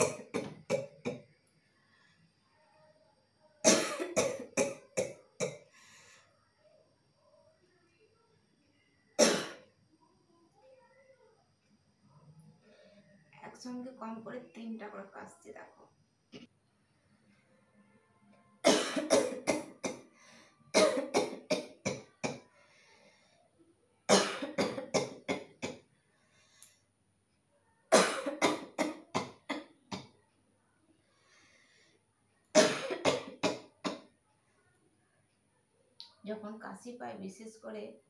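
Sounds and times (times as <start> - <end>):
person coughing: 32.6 - 33.4.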